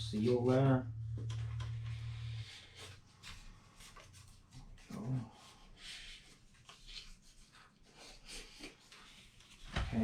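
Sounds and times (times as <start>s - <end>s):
scratchy rubbing on foam board: 2.0s - 10.0s.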